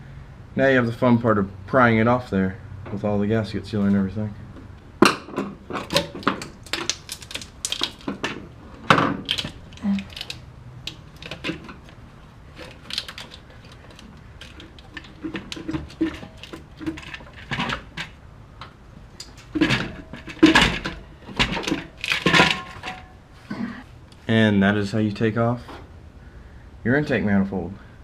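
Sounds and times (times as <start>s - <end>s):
prying tool clanking on metal: 5.0s - 18.2s, 19.2s - 23.8s.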